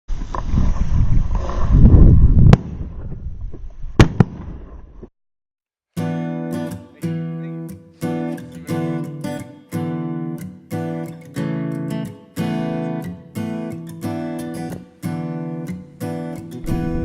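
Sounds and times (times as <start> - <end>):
wind on microphone: 0.1 - 5.1, 16.6 - 17.0
shotgun shots: 4.0 - 4.6
strummed acoustic guitar music: 6.0 - 17.0.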